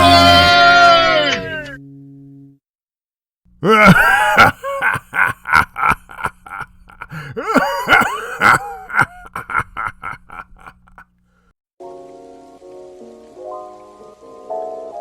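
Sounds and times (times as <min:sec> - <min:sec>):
rising and falling cries: 0:00.0 - 0:01.8.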